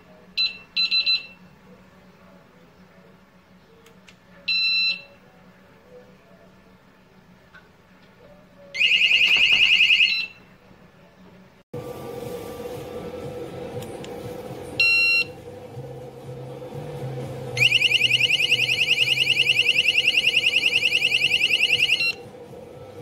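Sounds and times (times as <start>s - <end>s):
warbling alarm siren: 17.6s - 22.3s.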